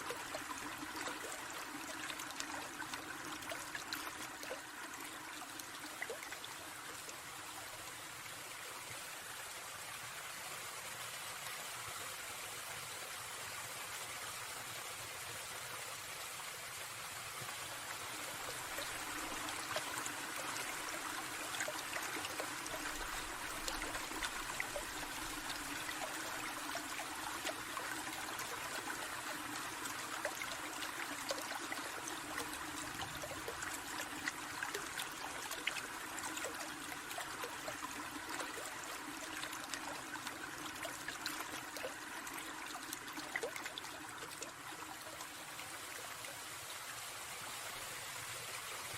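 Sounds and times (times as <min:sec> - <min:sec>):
small splashes and drips: 0:00.0 - 0:07.7, 0:17.5 - 0:46.3
stream trickling over stones: 0:00.0 - 0:48.9.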